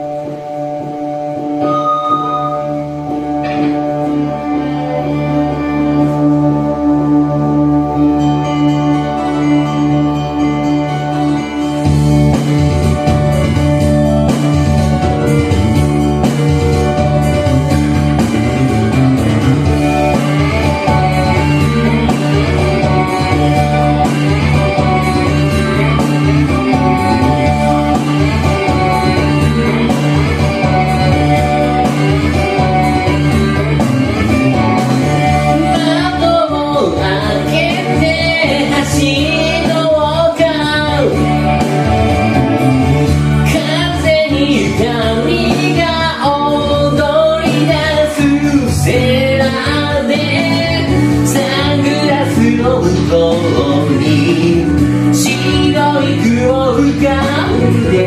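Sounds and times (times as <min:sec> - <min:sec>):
wavering lead melody: 0:00.0 - 0:45.9
pop-rock song with full band: 0:00.0 - 0:58.0.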